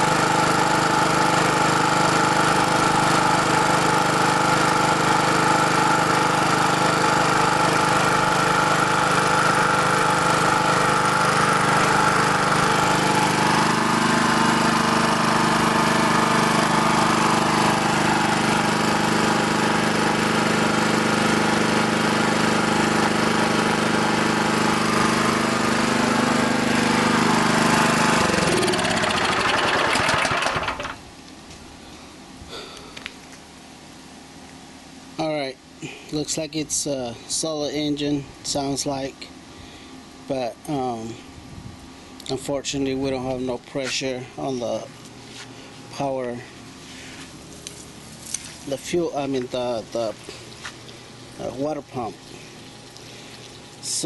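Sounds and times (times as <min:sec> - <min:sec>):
pressure washer engine running: 0:00.0 - 0:31.1, 0:42.2 - 0:54.0.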